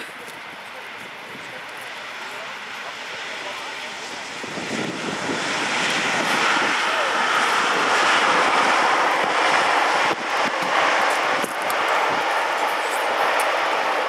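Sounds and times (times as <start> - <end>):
jet engines roaring: 0.0 - 14.0.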